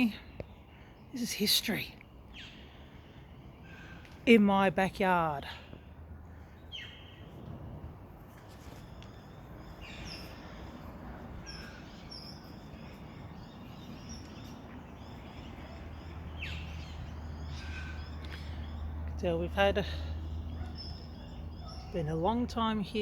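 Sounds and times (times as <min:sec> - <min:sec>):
birds chirping: 0:00.0 - 0:23.0.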